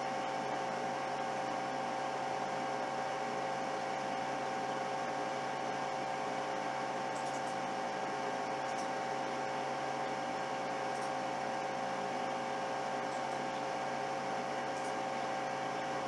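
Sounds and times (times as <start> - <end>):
cooling fan whirring: 0.0 - 16.0.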